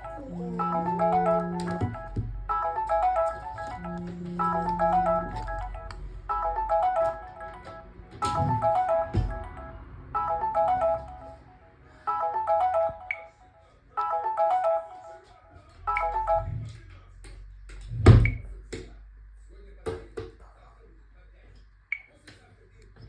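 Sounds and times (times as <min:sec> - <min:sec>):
phone alarm melody: 0:00.0 - 0:11.5, 0:12.1 - 0:13.4, 0:15.9 - 0:16.7.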